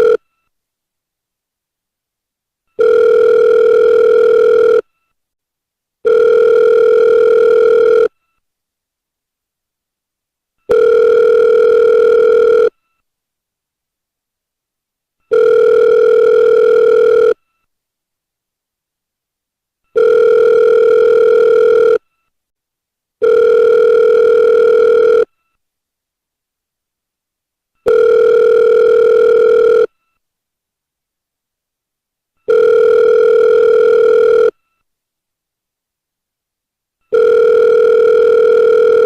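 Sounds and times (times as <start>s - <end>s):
telephone ringback tone: 0.0s - 0.2s, 2.8s - 4.9s, 6.0s - 8.2s, 10.7s - 12.8s, 15.3s - 17.4s, 19.9s - 22.0s, 23.2s - 25.3s, 27.8s - 29.9s, 32.4s - 34.6s, 37.1s - 39.0s.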